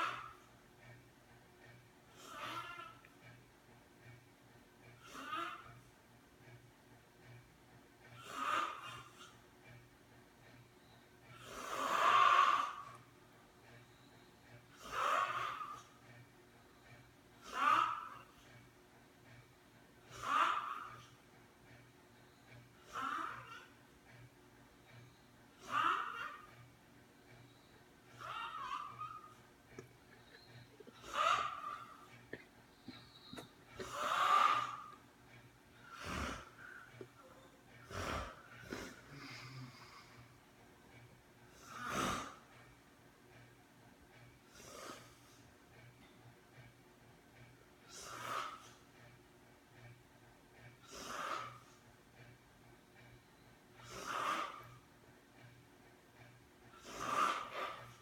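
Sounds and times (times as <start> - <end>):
person snoring: 35.8 - 36.6.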